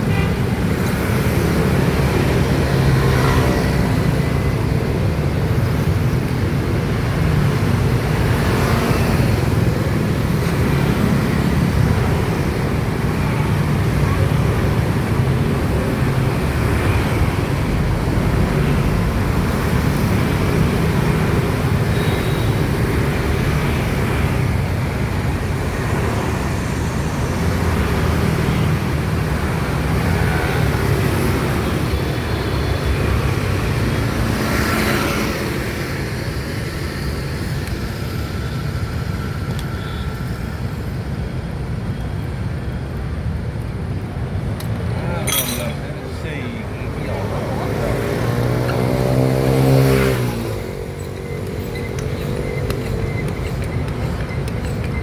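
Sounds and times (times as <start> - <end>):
road traffic noise: 0.0 - 55.0
vehicle engines running close by: 40.5 - 55.0.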